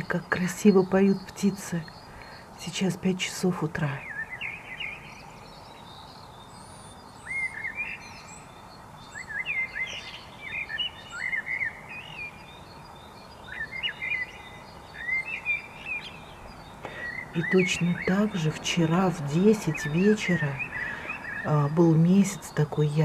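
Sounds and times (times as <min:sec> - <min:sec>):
faint background hiss: 0:00.0 - 0:23.0
high songbird chirps: 0:00.0 - 0:23.0
thrushes singing: 0:00.0 - 0:23.0.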